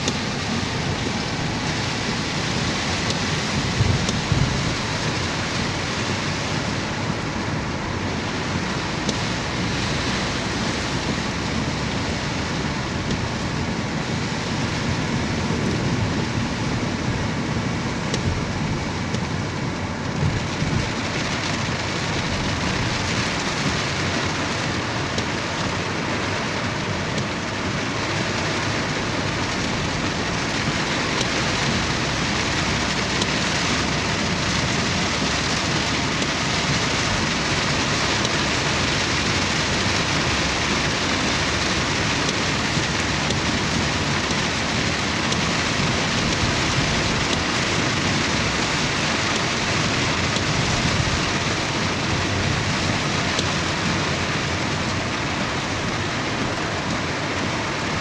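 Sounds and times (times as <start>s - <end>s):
rain pouring: 0.0s - 58.0s.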